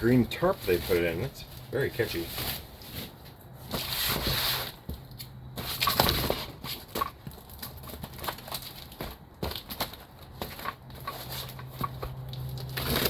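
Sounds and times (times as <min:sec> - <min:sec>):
plastic wrapping rustling: 0:00.0 - 0:04.9, 0:05.6 - 0:13.0.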